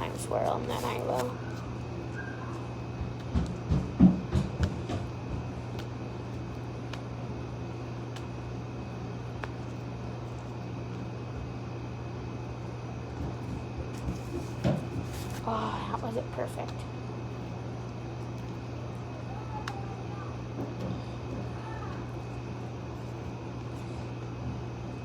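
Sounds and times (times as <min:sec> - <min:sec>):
slime handled by hand: 0:13.9 - 0:15.7.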